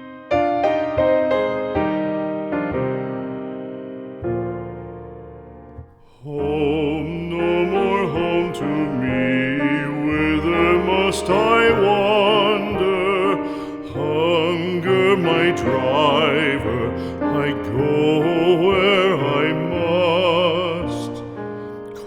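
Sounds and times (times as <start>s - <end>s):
piano accompaniment: 0.0s - 22.0s
piano chord: 0.0s - 22.0s
classical singer with vibrato: 6.0s - 22.0s.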